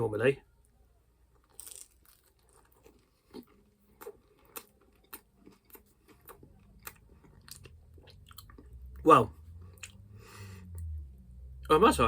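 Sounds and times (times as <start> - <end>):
person chewing food: 1.4 - 10.9.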